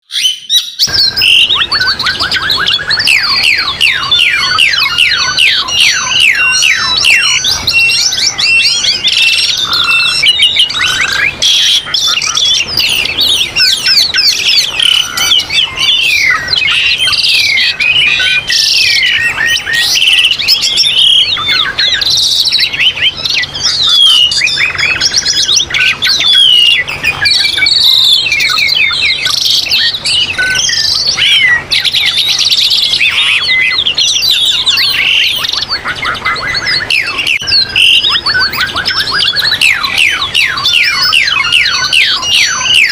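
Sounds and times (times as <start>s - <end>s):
songbirds singing: 0.0s - 42.9s.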